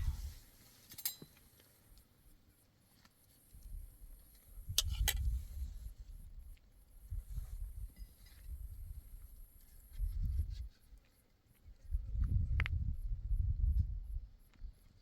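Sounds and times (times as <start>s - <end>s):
low rumbling noise: 0.0s - 0.4s.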